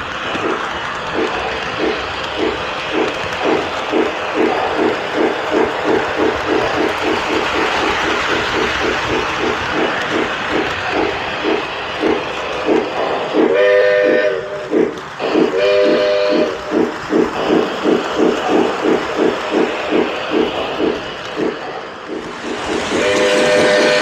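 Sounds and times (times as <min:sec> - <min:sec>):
toy train steam chuff: 0:00.0 - 0:24.0
wheels rumbling on track: 0:00.0 - 0:24.0
train whistle blasts: 0:13.5 - 0:14.7, 0:15.3 - 0:16.7, 0:22.9 - 0:24.0.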